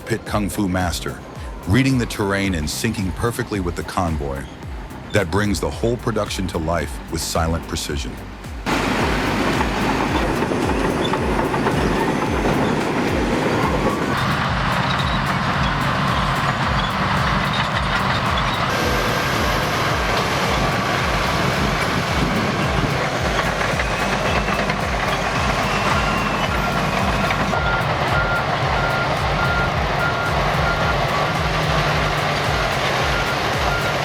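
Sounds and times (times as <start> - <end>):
heavy machinery engine rumble: 0.0 - 34.0
reversing alarm beeping: 8.7 - 34.0.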